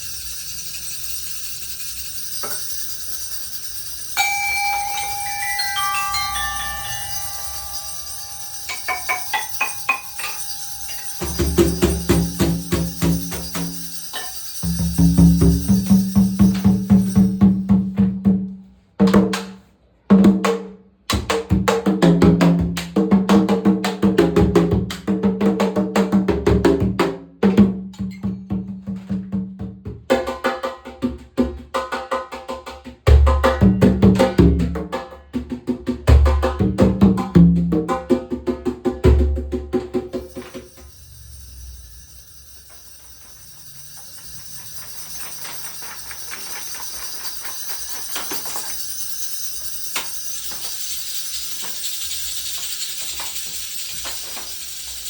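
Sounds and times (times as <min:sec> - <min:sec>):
conga drums playing: 0:04.2 - 0:19.4, 0:21.3 - 0:27.8, 0:28.5 - 0:41.0.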